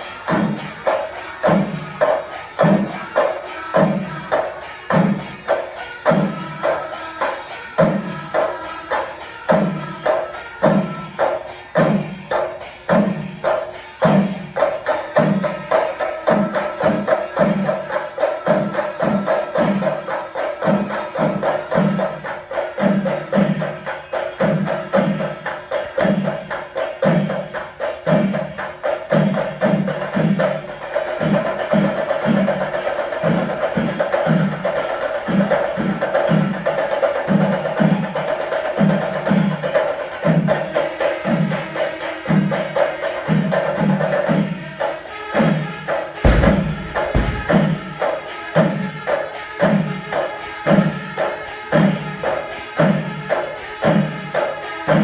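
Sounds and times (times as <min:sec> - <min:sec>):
hand cymbals ringing: 0:00.0 - 0:28.6, 0:46.2 - 0:49.6
drums beaten in rhythm: 0:00.0 - 0:55.0.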